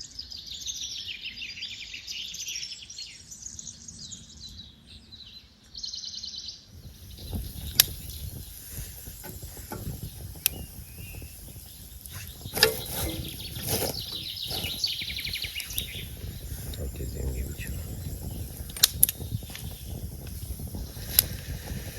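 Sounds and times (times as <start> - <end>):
small birds trilling: 0.0 - 21.9
rustling handling noise: 6.7 - 21.5
sharp clicks: 7.0 - 21.5.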